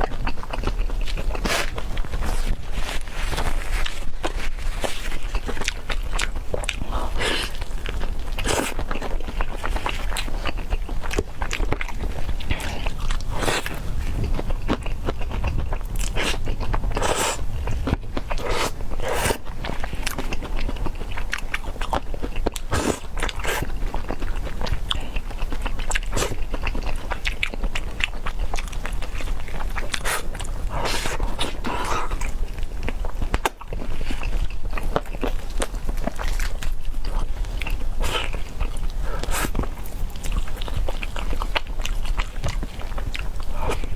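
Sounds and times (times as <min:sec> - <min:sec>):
crunchy chewing: 0:00.0 - 0:43.9.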